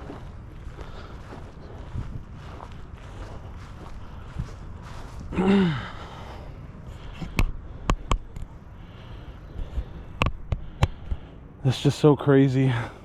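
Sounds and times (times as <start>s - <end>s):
outdoor background hiss: 0.0s - 13.0s
man sighing: 5.3s - 6.5s
sharp taps: 7.3s - 8.5s.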